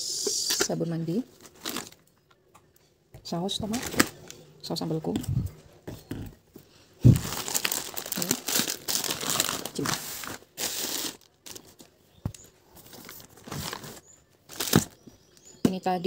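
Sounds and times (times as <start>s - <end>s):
plastic bag crinkling: 1.3s - 2.1s, 3.5s - 4.4s, 7.0s - 12.0s, 12.8s - 15.0s.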